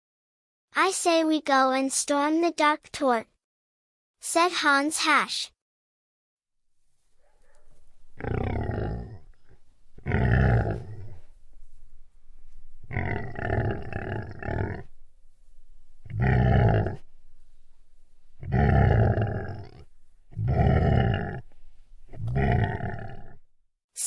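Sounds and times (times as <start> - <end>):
creature growls: 8.2 - 11.3, 12.9 - 14.9, 16.1 - 17.0, 18.4 - 21.5, 22.1 - 23.4.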